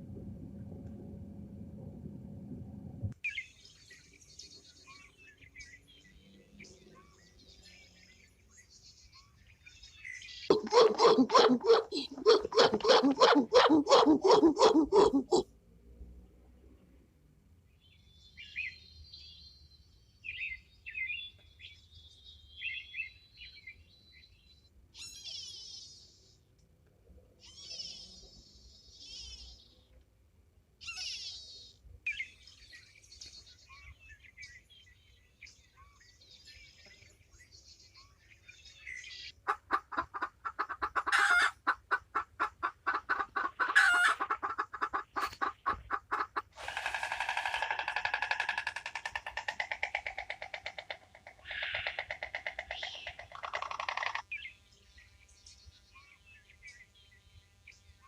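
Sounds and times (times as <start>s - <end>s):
chicken pulsing call: 10.5s - 15.4s, 39.5s - 53.2s
chickens clucking: 10.5s - 15.4s, 39.4s - 46.8s
faint bird chirps: 17.9s - 26.5s, 27.4s - 30.0s.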